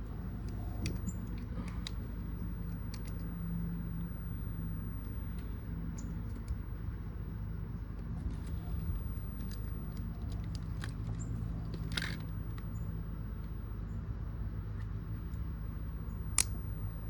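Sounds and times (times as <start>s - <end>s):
steady low hum: 0.0s - 17.0s
small plastic parts clicking: 0.4s - 4.1s, 8.3s - 12.8s.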